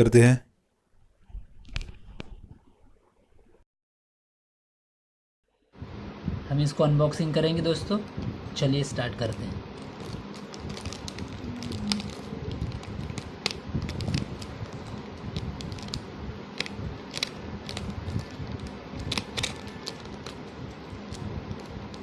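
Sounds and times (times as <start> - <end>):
steady low hum: 5.5 - 22.0
cardboard and plastic packaging crackling: 9.2 - 22.0.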